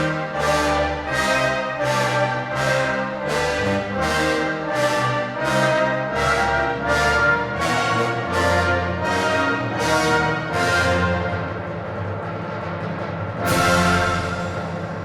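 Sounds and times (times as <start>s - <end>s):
orchestral music with brass: 0.0s - 15.0s
sharp percussive hits: 13.5s - 15.0s.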